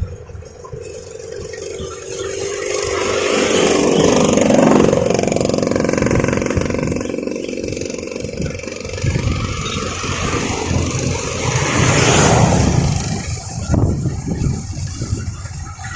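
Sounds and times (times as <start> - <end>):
combine harvester engine running: 0.0 - 15.9.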